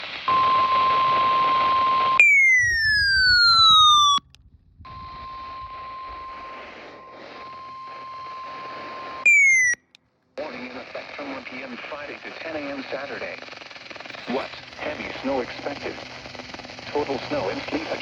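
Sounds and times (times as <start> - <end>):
electronic tone sliding down: 2.2 - 4.3, 5.0 - 9.9
steady alarm tone: 2.2 - 4.3, 4.9 - 9.9
radio static: 10.4 - 18.0.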